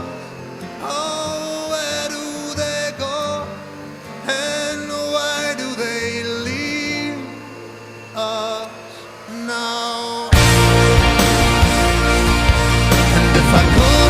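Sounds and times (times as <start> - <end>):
song with band accompaniment: 10.3 - 14.0.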